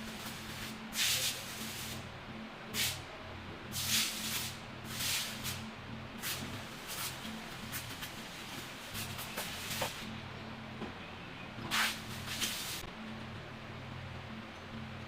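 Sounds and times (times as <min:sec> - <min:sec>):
low steady hum: 0:00.0 - 0:15.0
short hissing bursts: 0:00.1 - 0:02.0, 0:03.7 - 0:05.6, 0:06.2 - 0:07.9, 0:11.7 - 0:12.9.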